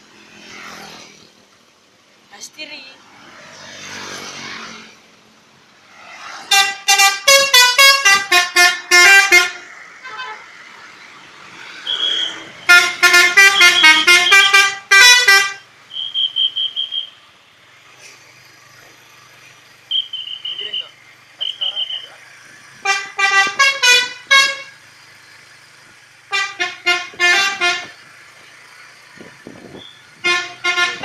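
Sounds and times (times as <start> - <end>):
multi-trumpet air horn tune: 6.5 - 10.4, 12.0 - 17.0, 22.8 - 24.8, 26.3 - 28.0, 30.2 - 31.0
short high beeps: 15.9 - 17.2.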